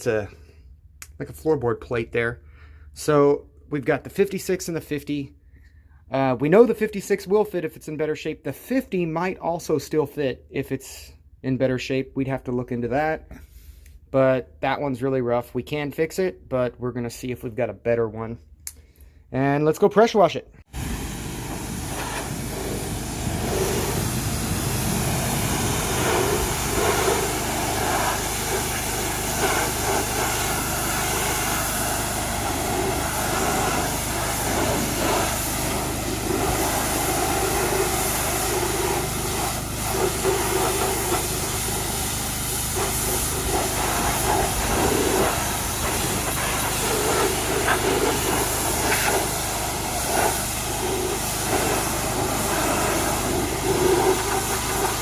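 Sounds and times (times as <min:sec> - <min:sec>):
motor drone: 0:20.7 - 0:37.5
pressure washer spray hissing: 0:20.7 - 0:55.0.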